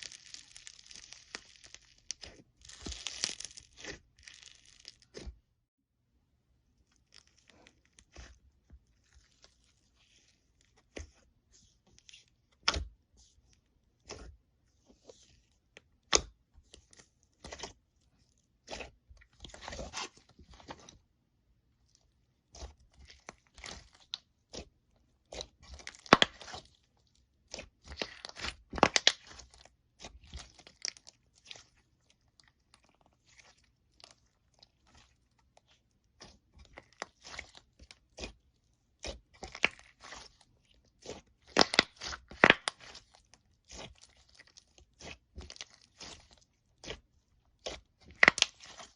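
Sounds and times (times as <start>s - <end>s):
slime crackling and popping: 0.0s - 5.3s, 22.6s - 48.9s.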